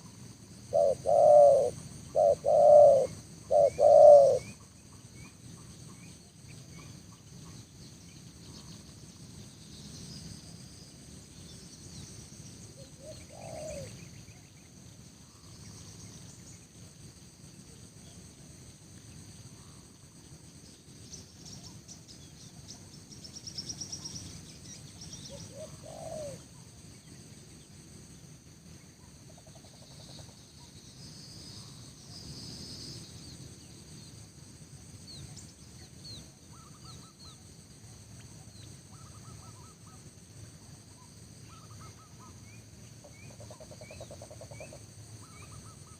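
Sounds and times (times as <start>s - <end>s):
insect drone: 0.0s - 45.9s
short low bird calls: 0.7s - 4.6s
small birds chirping: 35.0s - 40.8s.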